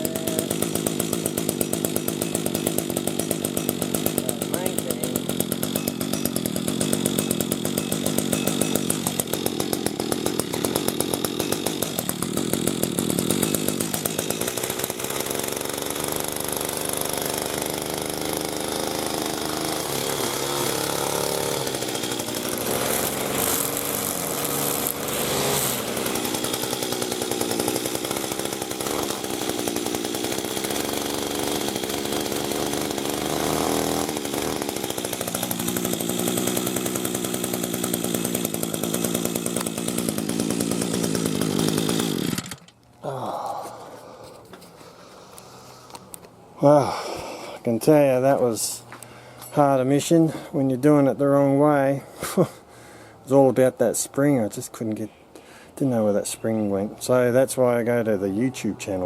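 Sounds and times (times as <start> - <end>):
string trimmer engine running: 0.0 - 52.4.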